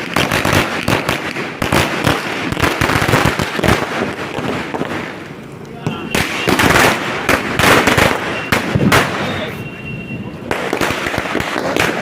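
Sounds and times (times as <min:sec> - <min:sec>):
firecracker bangs: 0:00.0 - 0:05.2, 0:05.8 - 0:09.7, 0:10.4 - 0:12.0
rapid firecracker crackling: 0:00.0 - 0:12.0
high whistle: 0:08.2 - 0:08.6, 0:09.2 - 0:10.4.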